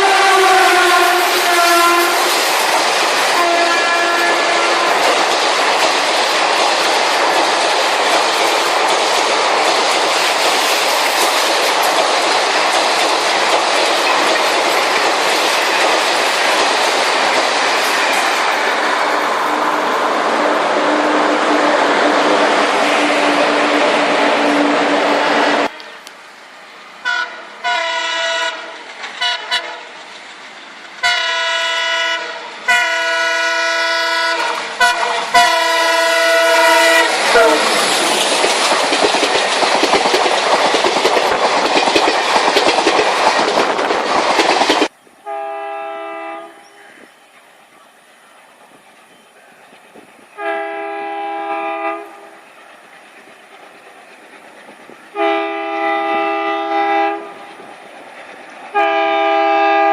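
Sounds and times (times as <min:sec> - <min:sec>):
locomotive horn blasts: 0:00.0 - 0:02.3, 0:03.3 - 0:05.1, 0:20.4 - 0:26.1, 0:27.1 - 0:29.8, 0:31.0 - 0:37.7, 0:45.2 - 0:46.8, 0:50.4 - 0:52.3, 0:55.1 - 0:57.4, 0:58.7 - 0:59.9
passing train rail noise: 0:00.0 - 0:59.9.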